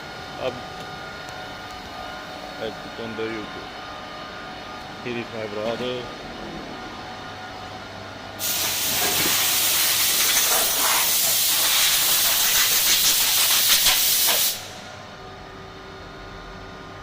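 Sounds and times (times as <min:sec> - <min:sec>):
compressed air hissing: 0:08.4 - 0:14.8.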